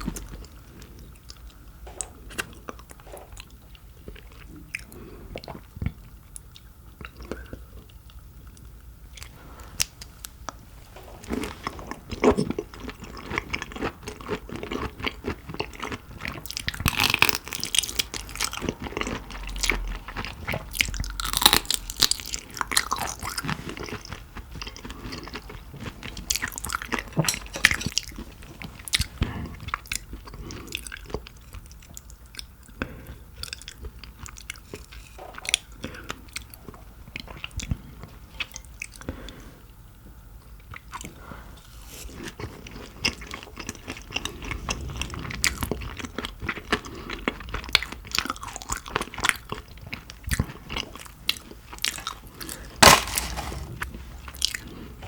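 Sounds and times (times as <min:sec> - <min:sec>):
person chewing crunchy food: 0:11.2 - 0:39.1, 0:41.8 - 0:55.0.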